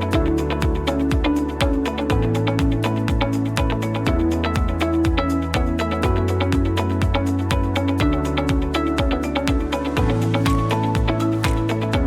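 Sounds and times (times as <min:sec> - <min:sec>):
kick drum beat: 0:00.0 - 0:12.0.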